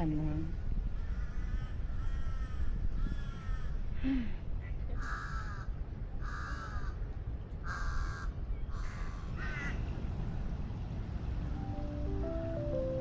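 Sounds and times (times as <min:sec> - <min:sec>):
crow cawing: 0:05.0 - 0:07.0, 0:07.6 - 0:09.8.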